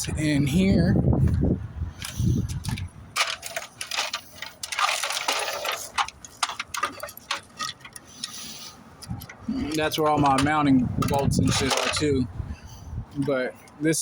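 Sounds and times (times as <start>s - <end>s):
rustling: 2.0s - 12.1s
metal parts clinking and rattling: 2.0s - 12.3s.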